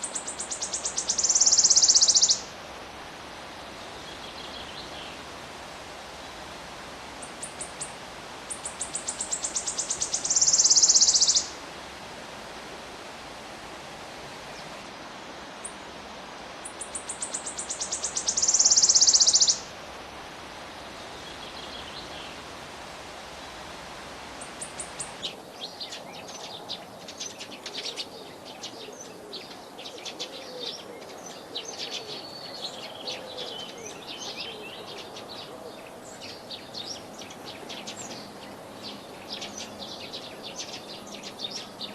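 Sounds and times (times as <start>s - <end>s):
sparrows chirping: 0.0s - 2.5s, 8.5s - 11.5s, 16.7s - 19.7s, 24.6s - 41.9s.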